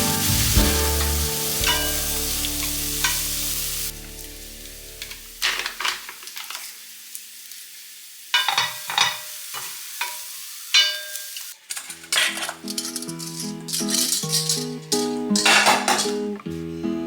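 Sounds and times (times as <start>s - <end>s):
pan ringing: 0.6s - 3.2s, 12.2s - 16.4s
spatula scraping frying pan: 0.9s - 3.4s, 10.8s - 16.4s.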